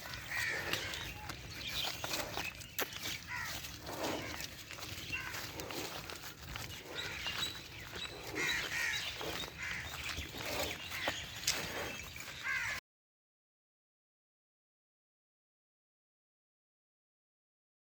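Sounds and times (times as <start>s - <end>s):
birds chirping calls: 0.0s - 12.8s.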